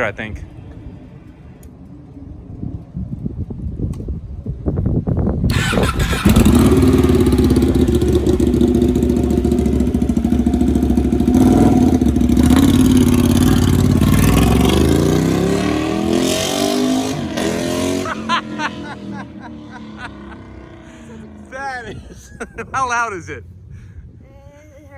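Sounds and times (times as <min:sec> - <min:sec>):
loud motorcycle engine revving: 0:05.5 - 0:21.7.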